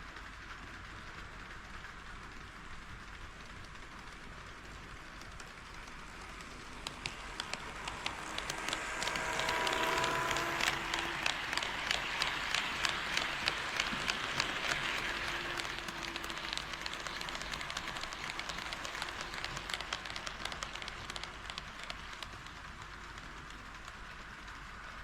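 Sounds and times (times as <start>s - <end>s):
model train wheels and motor whir: 0.0s - 25.0s
wheels clicking over rail joints: 3.9s - 24.9s.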